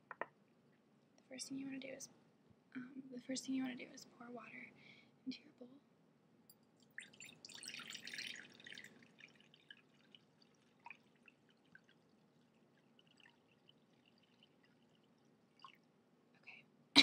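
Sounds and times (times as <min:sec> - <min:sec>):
water dripping: 0:06.7 - 0:16.5
water pouring into a bowl: 0:06.8 - 0:15.9.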